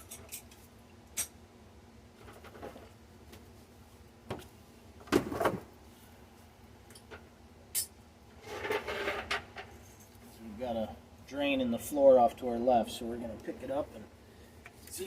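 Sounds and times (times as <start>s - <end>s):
scraping and rustling: 8.4s - 10.4s.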